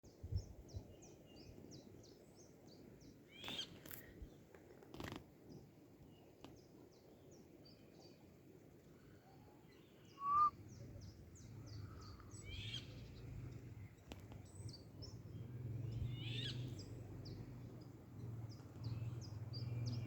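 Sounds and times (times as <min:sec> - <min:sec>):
low steady hiss: 0:00.1 - 0:20.0
small birds chirping: 0:00.1 - 0:20.0
louder bird call: 0:10.1 - 0:10.6.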